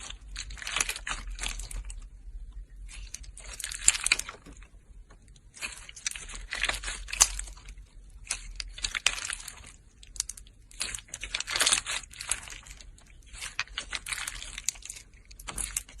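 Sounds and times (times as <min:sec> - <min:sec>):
foil crinkling and crunching: 0:00.0 - 0:02.0, 0:03.0 - 0:04.6, 0:05.5 - 0:16.0.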